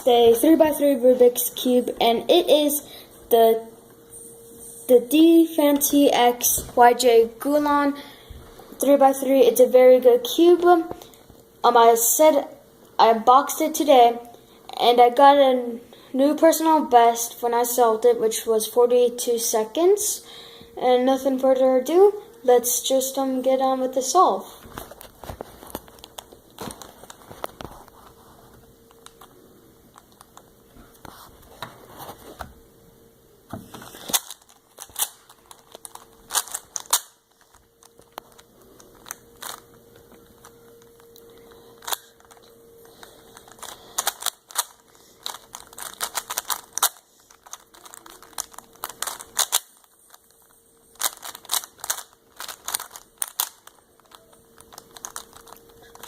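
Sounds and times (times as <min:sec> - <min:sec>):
puzzle cube clicking: 0:43.4 - 0:50.2, 0:51.0 - 0:56.0.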